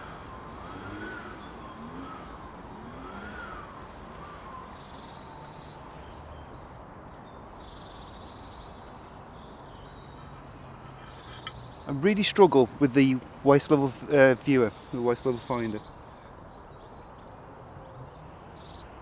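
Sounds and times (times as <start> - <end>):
faint siren wailing: 0.0 - 5.9
outdoor background noise: 0.0 - 19.0.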